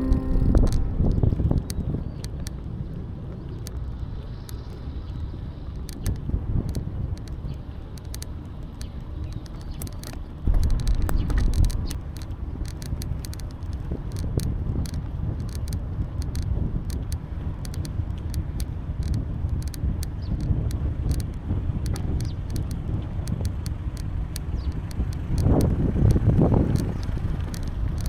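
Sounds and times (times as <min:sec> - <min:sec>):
wind buffeting microphone: 0:00.0 - 0:28.0
bicycle clicks and rattles: 0:05.8 - 0:28.0.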